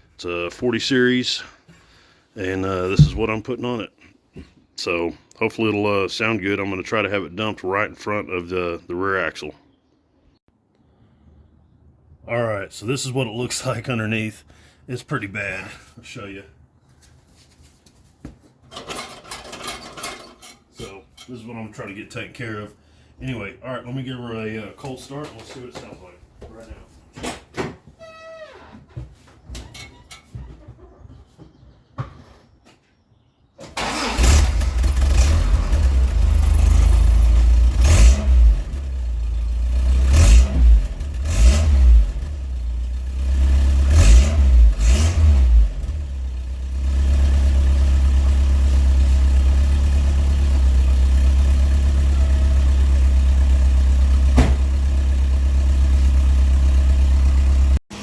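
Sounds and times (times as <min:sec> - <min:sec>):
engine starting and revving: 0:33.6 - 0:48.9.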